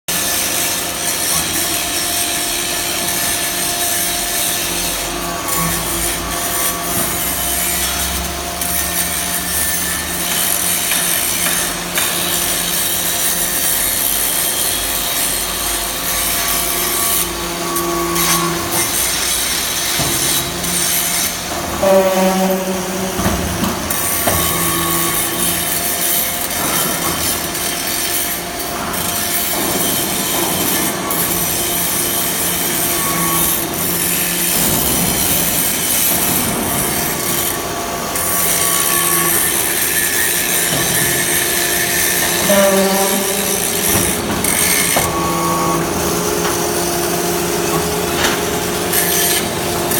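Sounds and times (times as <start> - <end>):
machine squealing: 2.9 - 49.9
metal scraping: 18.2 - 49.9
machine hum: 20.9 - 49.9.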